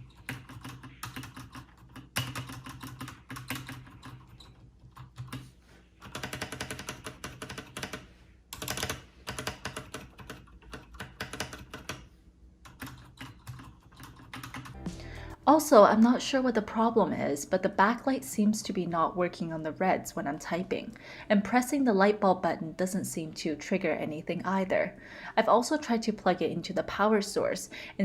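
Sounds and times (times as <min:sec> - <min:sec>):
mechanical keyboard typing: 0:00.0 - 0:05.4, 0:06.0 - 0:14.8.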